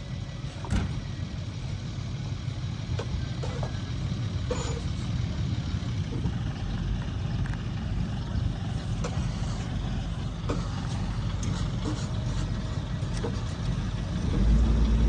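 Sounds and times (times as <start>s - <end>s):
diesel machinery rumbling: 0.0s - 15.0s.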